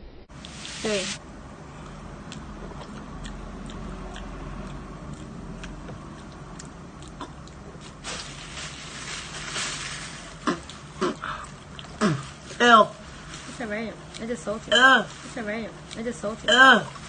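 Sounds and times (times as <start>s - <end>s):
hissing rustle: 0.4s - 1.2s, 7.8s - 10.7s
person chewing: 1.7s - 8.0s, 10.4s - 12.2s.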